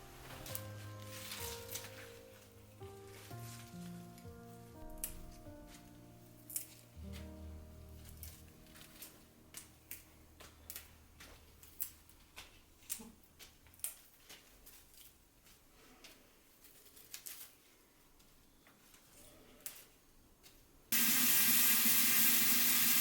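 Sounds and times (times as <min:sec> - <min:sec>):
soft background music: 0:00.0 - 0:11.4.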